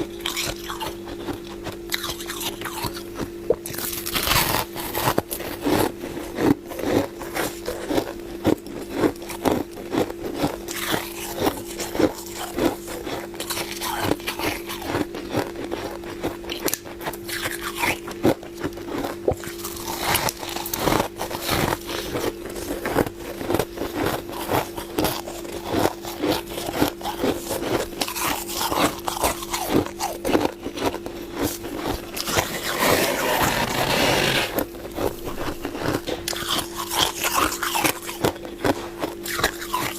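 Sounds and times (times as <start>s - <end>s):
steady low hum: 0.0s - 39.9s
crunching frost: 18.7s - 39.9s.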